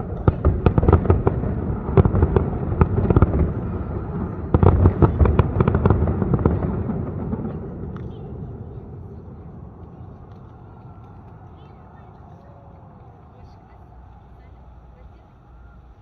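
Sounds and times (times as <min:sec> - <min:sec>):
fireworks booms rumbling: 0:00.0 - 0:12.2
fireworks bangs and crackles: 0:00.0 - 0:15.1.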